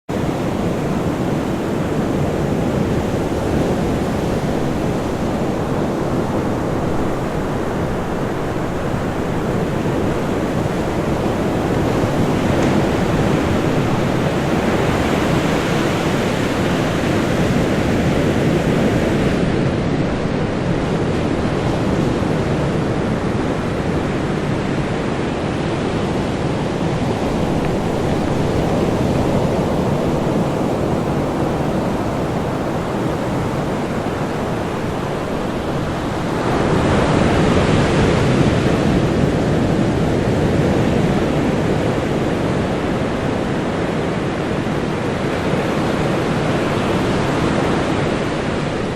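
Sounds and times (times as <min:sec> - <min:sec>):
ocean waves breaking: 0:00.1 - 0:48.9.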